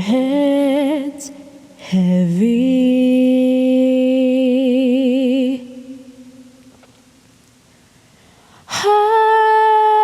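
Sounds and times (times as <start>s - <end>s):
woman singing with vibrato: 0.0s - 6.6s, 8.6s - 10.0s.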